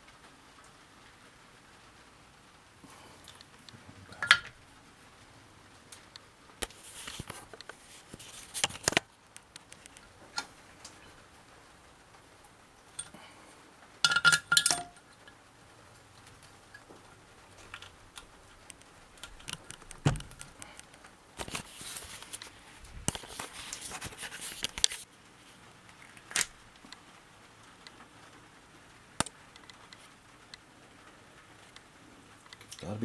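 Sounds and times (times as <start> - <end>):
metal tools clinking: 14.1 - 15.0.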